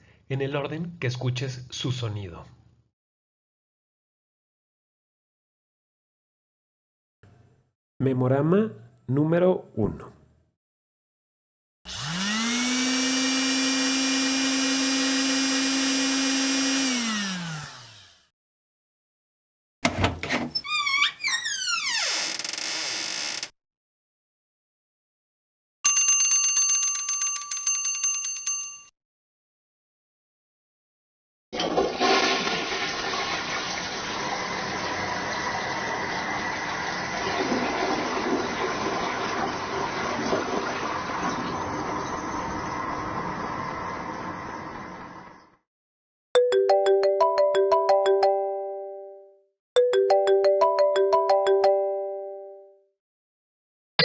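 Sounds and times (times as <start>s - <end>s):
hair dryer motor whining: 11.9s - 18.2s
toilet flushing: 31.6s - 45.3s.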